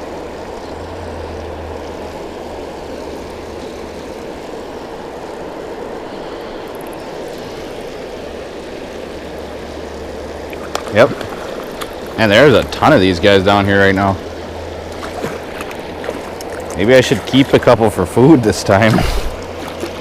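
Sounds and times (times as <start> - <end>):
water pouring through spillway: 9.0 - 20.0.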